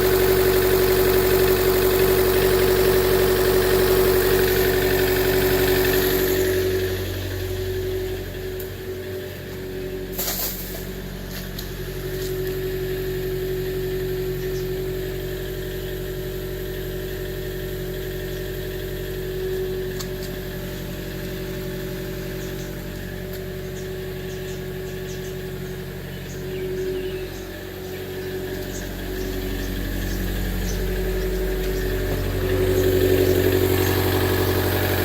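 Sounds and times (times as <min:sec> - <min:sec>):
car engine idling: 0:00.0 - 0:35.0.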